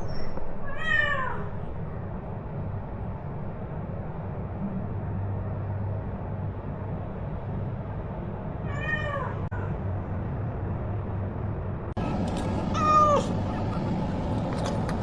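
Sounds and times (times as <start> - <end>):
cat meowing: 8.6 - 9.7, 12.0 - 13.9
steady low hum: 9.3 - 15.0.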